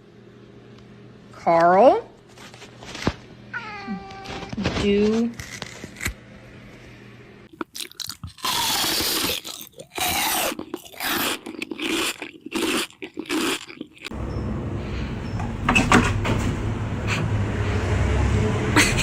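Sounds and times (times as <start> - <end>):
loud crunching: 7.5 - 14.2.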